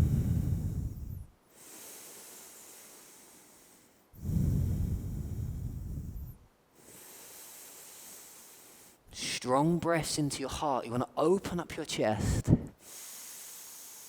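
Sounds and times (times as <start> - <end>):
person breathing deeply: 0.0 - 9.0.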